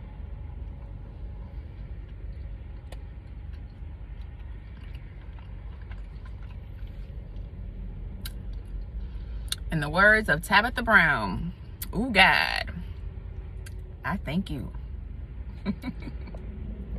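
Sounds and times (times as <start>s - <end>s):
steady low rumble: 0.0s - 16.9s
person chewing: 1.9s - 7.6s.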